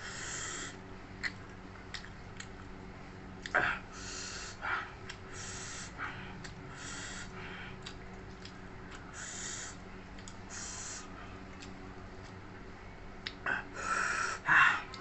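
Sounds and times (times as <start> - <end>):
short hissing breaths: 0.0 - 0.8, 5.3 - 6.1, 6.7 - 7.6, 9.1 - 9.8, 10.5 - 11.2
steady low hum: 0.0 - 15.0
person chewing: 1.2 - 2.7, 7.7 - 9.3.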